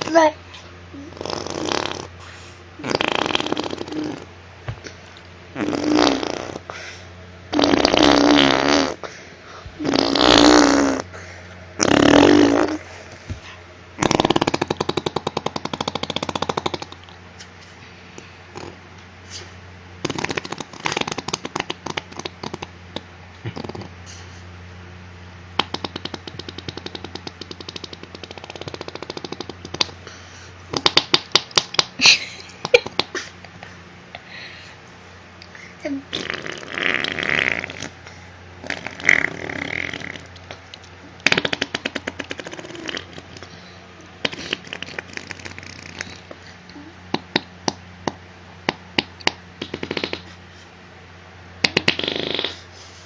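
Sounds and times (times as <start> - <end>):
imitated fart noises: 1.0 - 2.2, 2.8 - 4.3, 5.5 - 6.7, 7.5 - 9.1, 9.8 - 11.1, 11.8 - 13.3, 14.0 - 17.2, 18.5 - 18.9, 20.0 - 24.0, 25.6 - 30.0, 30.7 - 31.9, 36.0 - 38.0, 38.6 - 40.6, 41.2 - 43.5, 44.2 - 46.3, 47.1 - 50.4, 51.6 - 52.7.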